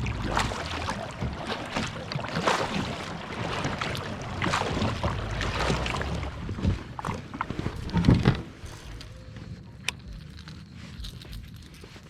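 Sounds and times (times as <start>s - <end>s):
paddle strokes splashing: 0.0s - 9.0s
wind rumble on microphone: 3.6s - 12.0s.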